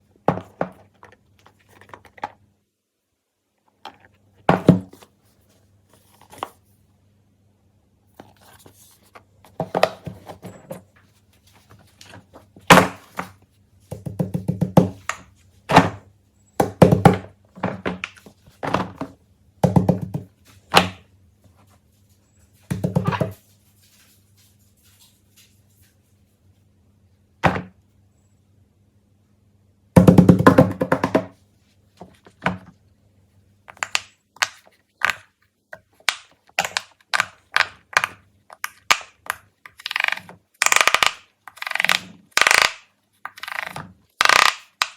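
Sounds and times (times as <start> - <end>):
faint low hum: 0.0 - 36.0
pop-it toy popping clicks: 36.0 - 44.9.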